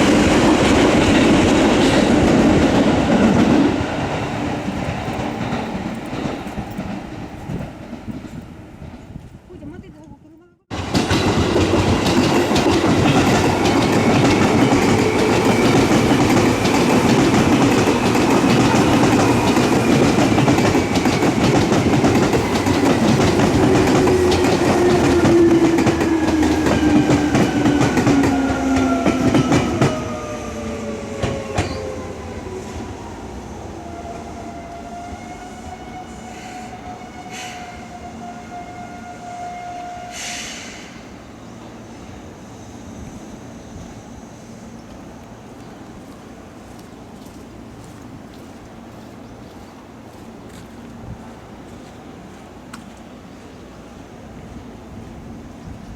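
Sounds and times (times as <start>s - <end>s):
train wheels clattering over rails: 0.0s - 9.2s, 10.7s - 30.4s.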